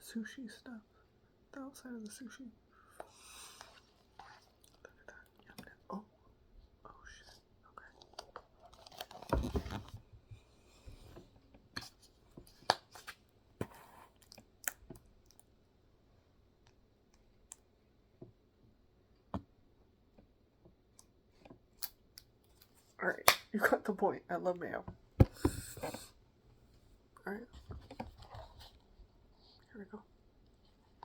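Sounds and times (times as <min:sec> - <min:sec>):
food containers rustling and squishing: 0:08.1 - 0:15.5.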